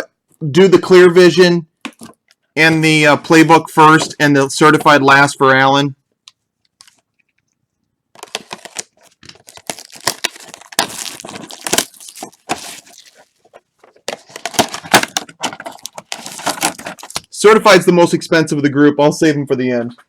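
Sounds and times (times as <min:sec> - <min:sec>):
packaging torn and crinkled: 0:08.2 - 0:17.4.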